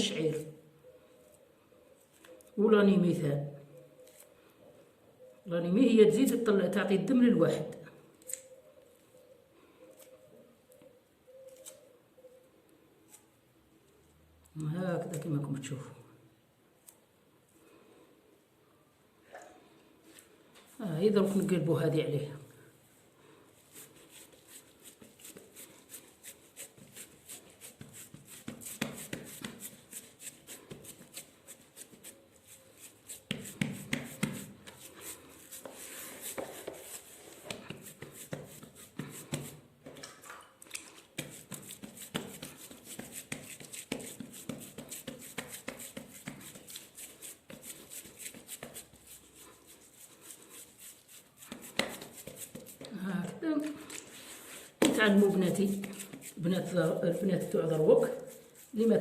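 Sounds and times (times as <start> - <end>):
hands patting dough: 23.7 - 40.2, 40.9 - 59.0.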